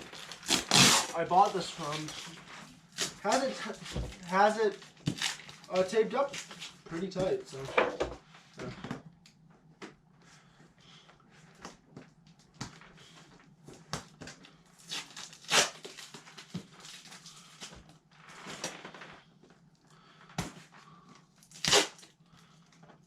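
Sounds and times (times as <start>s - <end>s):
packing tape and cardboard box: 0.0s - 6.9s, 14.3s - 19.1s, 21.4s - 22.2s.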